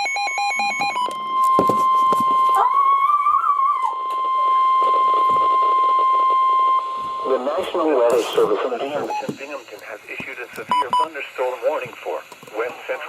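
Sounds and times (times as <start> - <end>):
steady piercing alarm tone: 0.0 - 9.7
fast stepping run of beeps: 8.8 - 9.5, 10.2 - 11.1.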